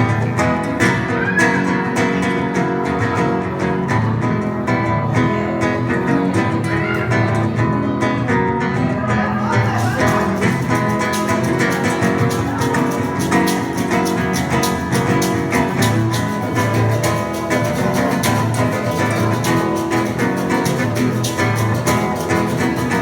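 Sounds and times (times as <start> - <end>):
acoustic guitar strumming: 0.0 - 23.0
bongos playing: 9.8 - 23.0.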